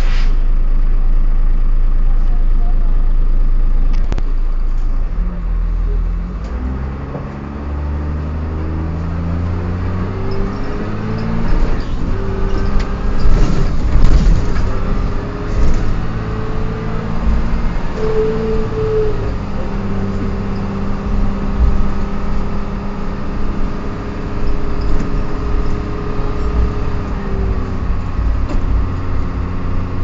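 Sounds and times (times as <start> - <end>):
bus engine accelerating: 0.0 - 30.0
gear whine: 8.9 - 30.0.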